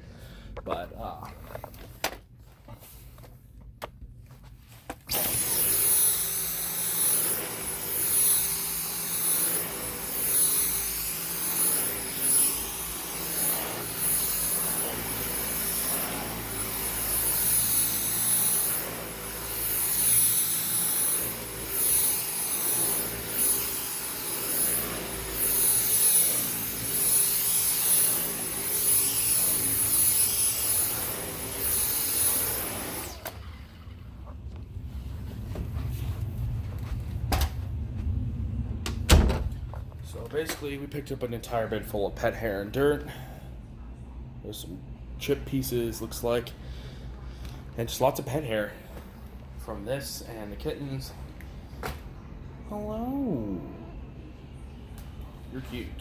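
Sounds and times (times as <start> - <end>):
vacuum cleaner whine on carpet: 5.1 - 38.1.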